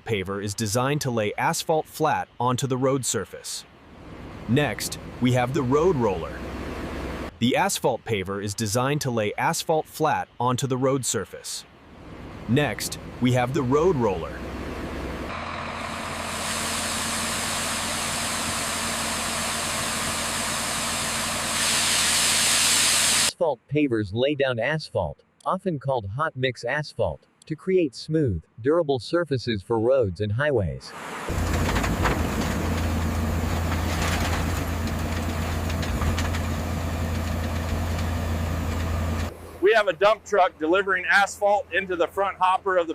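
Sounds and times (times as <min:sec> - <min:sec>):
heavy diesel engine running: 0:04.0 - 0:07.3, 0:12.0 - 0:23.3, 0:31.3 - 0:39.6.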